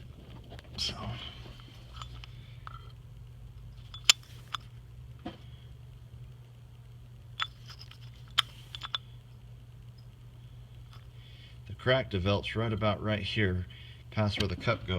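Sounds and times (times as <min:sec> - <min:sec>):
steady low hum: 0:00.0 - 0:14.9
tools clicking and knocking: 0:03.8 - 0:04.7, 0:07.4 - 0:09.1.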